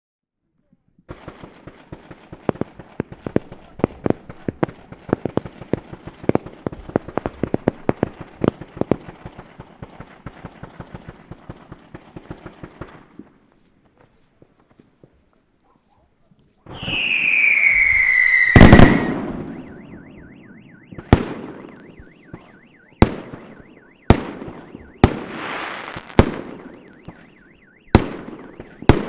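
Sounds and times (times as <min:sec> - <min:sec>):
fireworks bangs and pops: 0:01.1 - 0:15.3, 0:16.6 - 0:19.7, 0:20.9 - 0:29.0.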